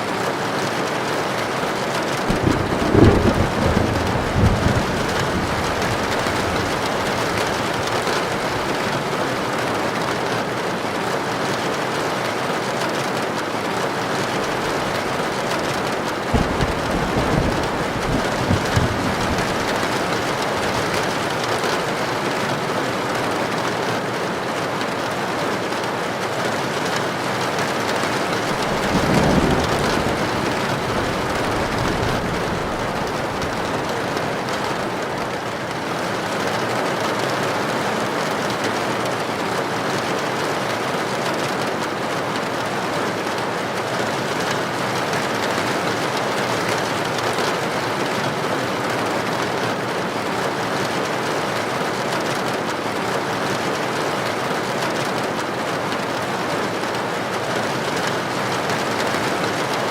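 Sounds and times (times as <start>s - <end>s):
heavy rain on a tin roof: 0.0s - 59.9s
low rumble of thunder: 2.2s - 10.1s, 14.3s - 21.8s, 28.0s - 35.8s.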